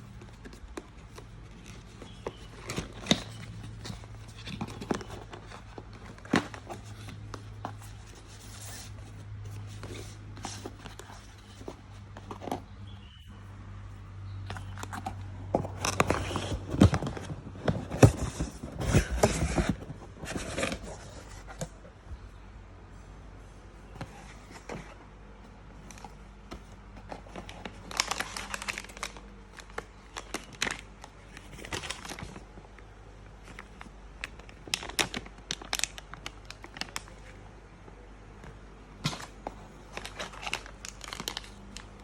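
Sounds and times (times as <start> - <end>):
packaging crinkling and tearing: 0.0 - 12.6, 14.5 - 21.8, 27.0 - 32.5, 33.5 - 37.3, 39.0 - 42.0.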